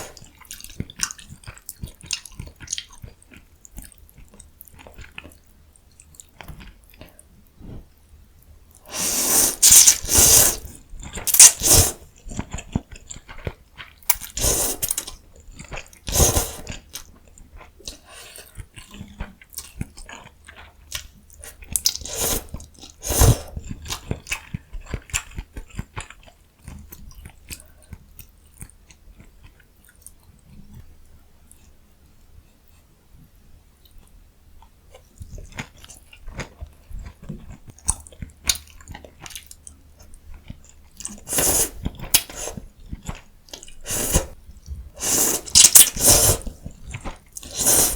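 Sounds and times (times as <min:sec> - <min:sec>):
slurping: 0:08.9 - 0:12.1, 0:14.3 - 0:15.1, 0:16.1 - 0:16.8, 0:22.0 - 0:23.5, 0:41.2 - 0:42.7, 0:43.7 - 0:44.4, 0:45.0 - 0:46.7, 0:47.4 - 0:47.9
person biting and chewing food: 0:08.9 - 0:12.9, 0:40.5 - 0:44.4, 0:45.0 - 0:47.9.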